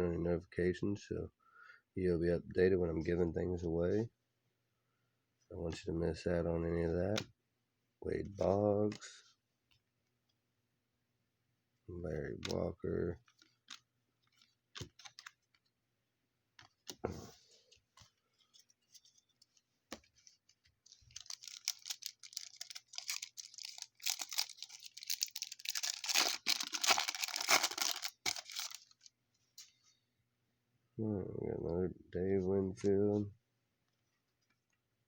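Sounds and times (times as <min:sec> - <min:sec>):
crinkly wrapper rustle: 0:13.2 - 0:15.8, 0:16.6 - 0:29.7.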